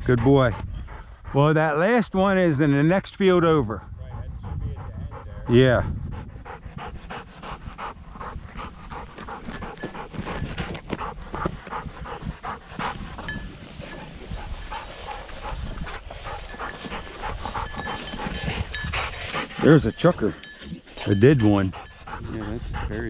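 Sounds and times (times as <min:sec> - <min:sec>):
dog panting: 0:00.0 - 0:01.8, 0:03.4 - 0:23.0
rustles and crunches: 0:08.5 - 0:22.0.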